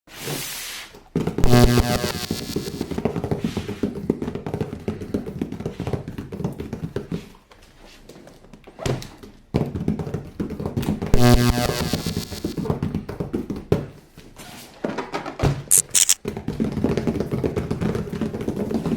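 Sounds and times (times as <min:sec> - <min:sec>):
pitched tone: 0:01.4 - 0:02.9, 0:11.2 - 0:12.7, 0:15.7 - 0:16.2.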